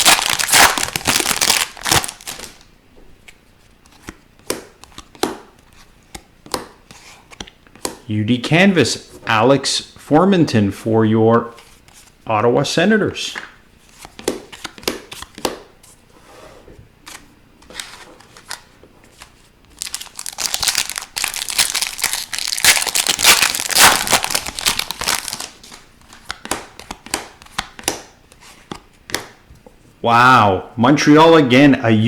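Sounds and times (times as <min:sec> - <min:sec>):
foil wrapper crinkling and tearing: 0:00.0 - 0:02.6, 0:19.7 - 0:25.7
cards clicking and rustling: 0:17.1 - 0:29.4.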